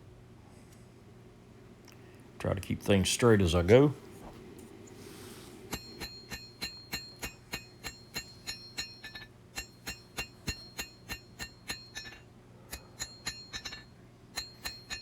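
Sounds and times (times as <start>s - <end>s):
hammer striking steel on anvil: 5.7s - 15.0s.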